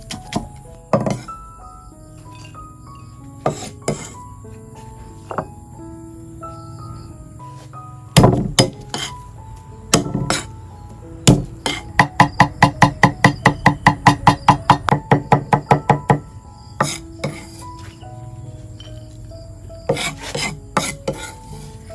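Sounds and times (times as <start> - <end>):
soft background music: 0.0 - 21.9
knife chopping on cutting board: 0.1 - 1.3, 3.4 - 4.2, 8.2 - 9.1, 10.0 - 10.5, 11.3 - 16.2, 16.8 - 17.6, 19.9 - 21.7.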